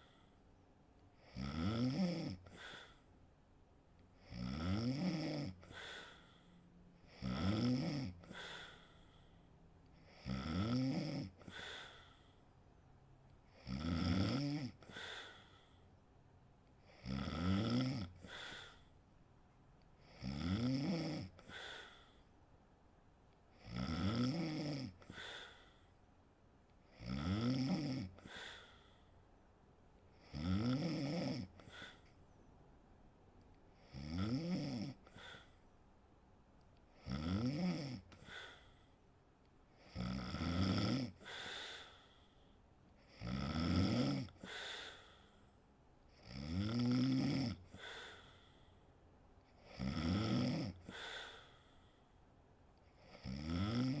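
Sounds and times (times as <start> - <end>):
faint breath: 0.0 - 1.3, 2.5 - 3.3, 5.6 - 7.2, 8.2 - 10.2, 11.4 - 12.7, 14.8 - 16.1, 18.2 - 19.1, 21.4 - 22.4, 25.0 - 26.0, 28.2 - 29.4, 31.6 - 32.4, 35.0 - 35.8, 38.1 - 39.9, 41.2 - 42.8, 44.3 - 45.7, 47.6 - 49.1, 50.8 - 53.2
woman snoring: 1.2 - 3.0, 4.2 - 6.3, 7.0 - 8.9, 10.0 - 12.1, 13.5 - 15.6, 16.9 - 18.9, 20.0 - 22.0, 23.6 - 25.7, 26.9 - 28.8, 30.1 - 32.0, 33.8 - 35.6, 37.0 - 38.7, 39.8 - 42.0, 43.1 - 45.1, 46.1 - 48.4, 49.6 - 51.6, 53.0 - 54.0.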